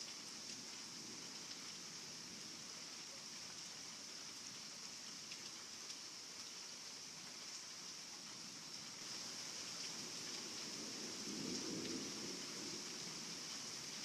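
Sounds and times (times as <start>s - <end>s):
heavy rain hissing: 0.0s - 14.0s.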